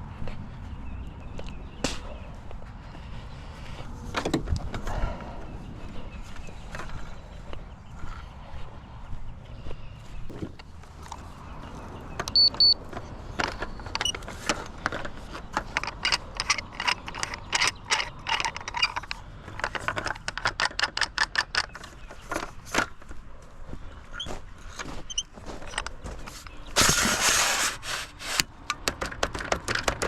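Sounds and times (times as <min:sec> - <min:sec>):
metallic clicks and rattles: 0:12.2 - 0:23.0, 0:25.1 - 0:26.9, 0:28.4 - 0:30.0
short high-pitched beeps: 0:12.3 - 0:12.8.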